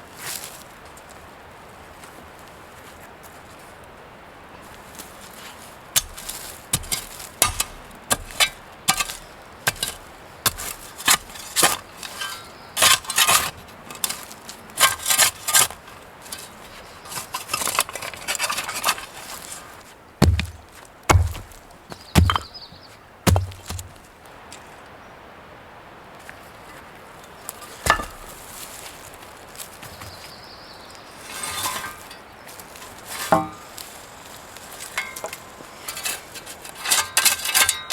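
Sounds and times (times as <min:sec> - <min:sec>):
wooden knocks and clacks: 0:20.2 - 0:22.5, 0:23.3 - 0:24.0
heavy thumps of lumber: 0:20.2 - 0:24.0, 0:27.9 - 0:28.4, 0:33.2 - 0:33.7.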